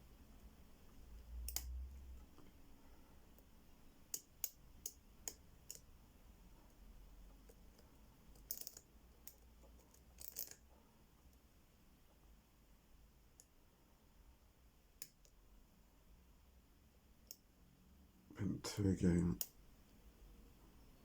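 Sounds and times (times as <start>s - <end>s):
lock pick clicks: 1.5s - 1.8s.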